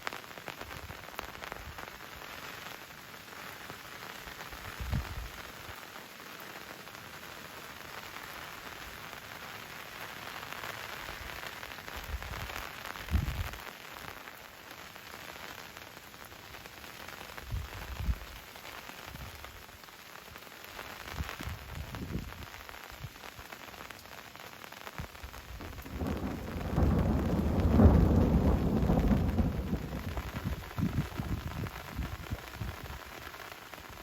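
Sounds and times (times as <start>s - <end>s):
rain pattering: 0.0s - 34.0s
thunder rumbling: 25.6s - 33.0s.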